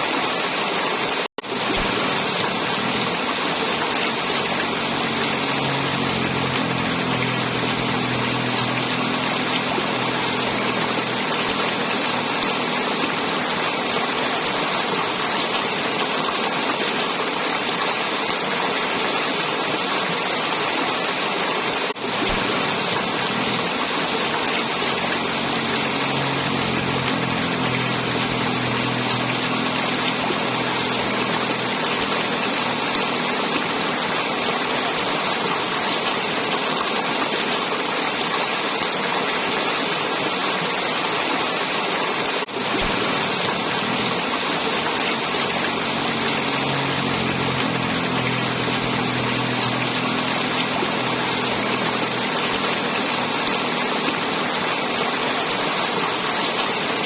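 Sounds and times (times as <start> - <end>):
river water flowing and gurgling: 0.0 - 57.0
low hum: 1.5 - 15.9, 22.0 - 35.4, 42.5 - 55.9.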